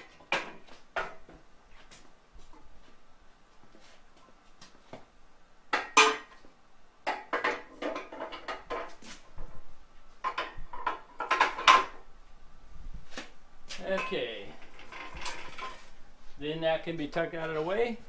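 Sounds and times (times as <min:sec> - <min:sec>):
metal tools clanking: 0:13.9 - 0:15.9.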